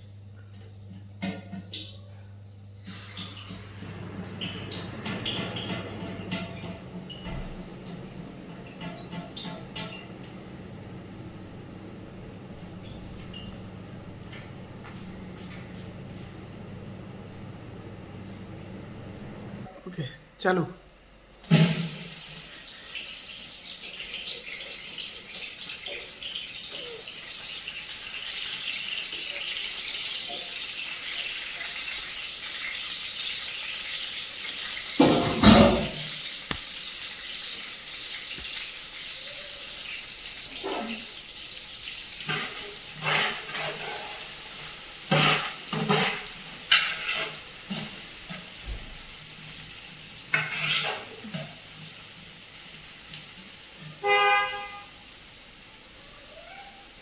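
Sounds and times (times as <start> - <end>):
food sizzling in hot oil: 21.5 - 54.1.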